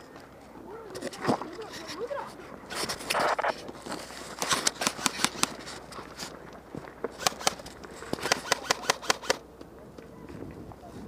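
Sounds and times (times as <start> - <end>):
airsoft guns firing: 4.4 - 5.6, 7.1 - 9.5.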